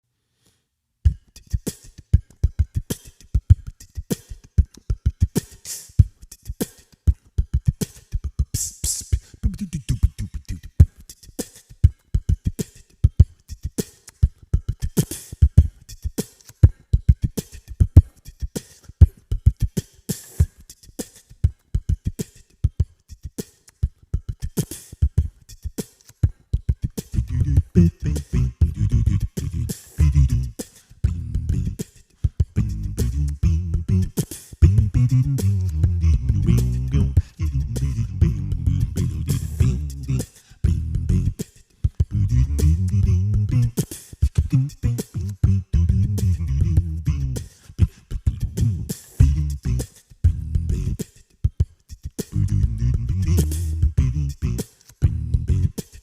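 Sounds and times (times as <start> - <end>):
beatboxing: 1.0 - 56.0
low sustained vocal sound: 27.2 - 31.8, 32.6 - 41.4, 42.1 - 43.8, 44.4 - 51.0, 52.4 - 55.8.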